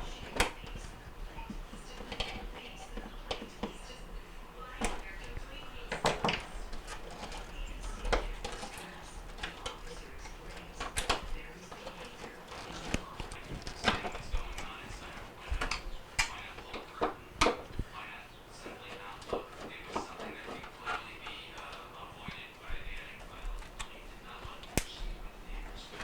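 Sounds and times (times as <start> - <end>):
sharp plastic clicks and knocks: 4.7 - 17.8, 18.6 - 26.0.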